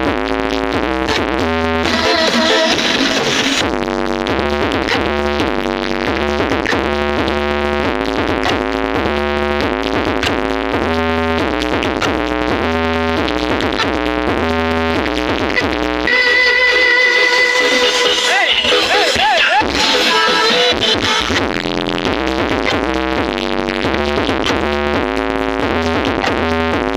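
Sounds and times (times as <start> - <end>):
electronic dance music: 1.8 - 3.8, 15.6 - 24.6.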